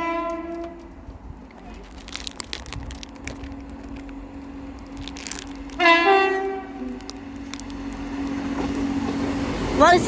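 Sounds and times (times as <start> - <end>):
train horn rising blast: 0.0 - 1.0, 5.6 - 10.0
diesel train engine drone: 0.0 - 10.0.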